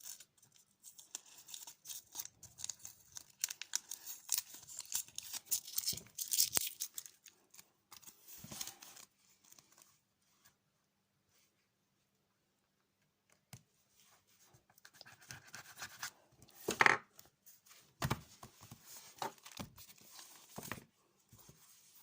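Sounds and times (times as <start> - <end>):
paper rustling and crinkling: 0.0 - 10.0.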